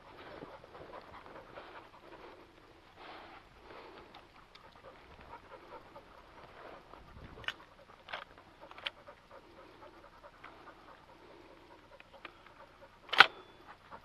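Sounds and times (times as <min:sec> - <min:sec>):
dog panting faintly: 0:00.0 - 0:14.0.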